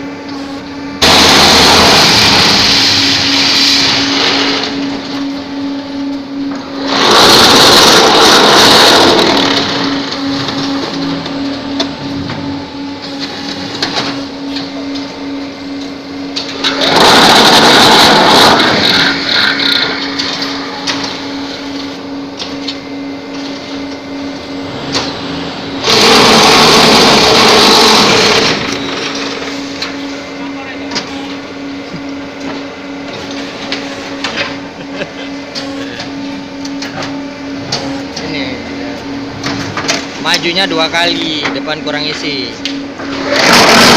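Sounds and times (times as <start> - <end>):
motor hum: 0.0 - 43.9
block machine pressing bursts: 1.0 - 4.4, 43.2 - 43.9.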